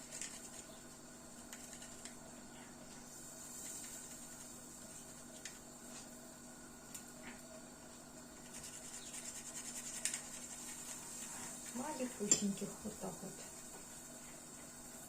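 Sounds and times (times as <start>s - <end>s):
quick rhythmic scraping strokes: 8.4s - 12.1s.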